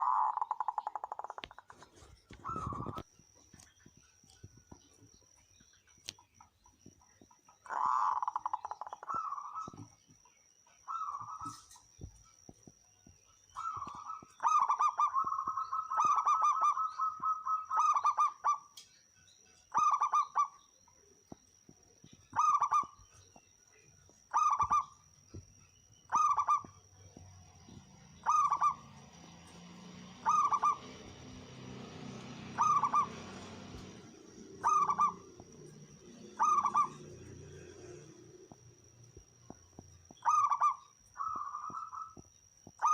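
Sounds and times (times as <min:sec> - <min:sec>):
dove cooing: 0:00.0 - 0:03.0, 0:07.6 - 0:09.9, 0:13.6 - 0:18.7, 0:19.7 - 0:20.5, 0:22.3 - 0:23.0, 0:24.3 - 0:25.0, 0:26.1 - 0:26.8, 0:28.2 - 0:38.6, 0:40.1 - 0:42.9
faint low hum: 0:00.0 - 0:42.9.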